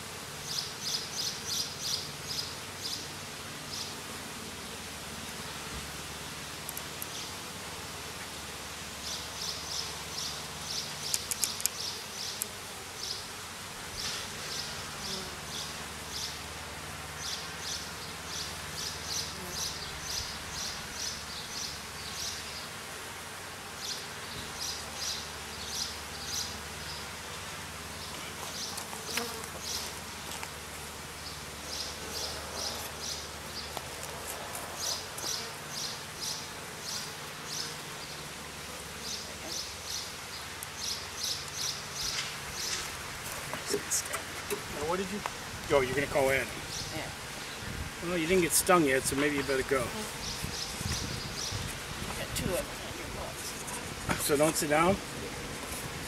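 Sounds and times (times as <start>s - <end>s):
honey bees buzzing: 0.0s - 56.0s
sharp clicks: 11.1s - 11.8s.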